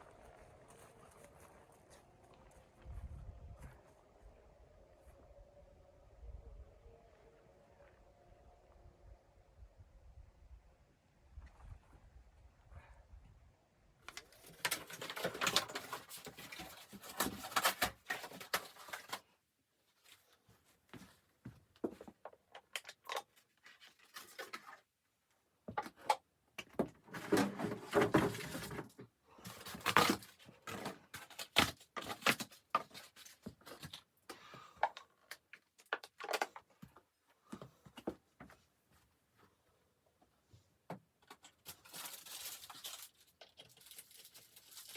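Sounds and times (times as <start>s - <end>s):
rustling and scraping of handled things: 0.0s - 4.2s, 14.0s - 44.9s.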